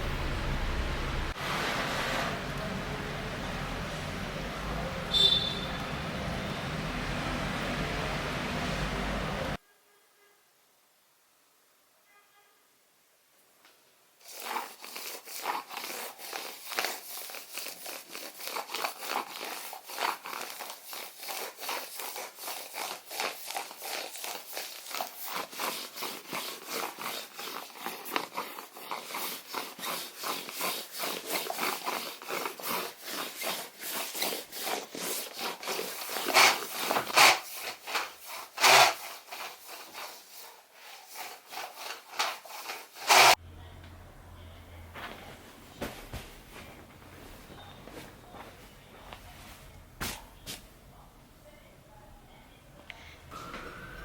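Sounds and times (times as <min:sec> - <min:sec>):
bedding rustling: 0:44.9 - 0:50.7.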